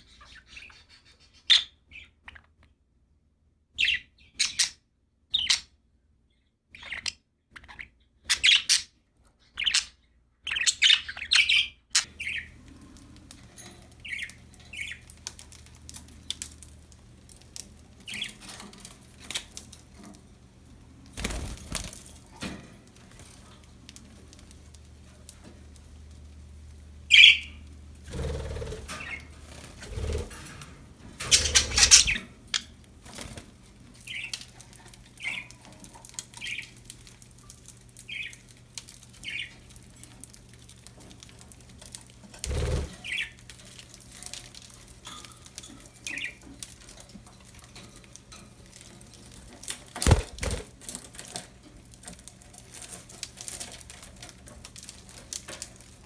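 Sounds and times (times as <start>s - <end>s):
budgerigars chirping: 6.8s - 8.9s, 9.6s - 12.6s, 27.1s - 29.3s, 31.3s - 32.7s
wings flapping and rustling: 12.0s - 56.0s.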